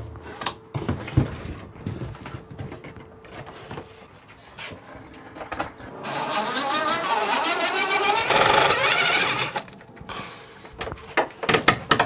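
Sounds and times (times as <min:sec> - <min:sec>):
power tool motor whirring: 0:06.0 - 0:09.7.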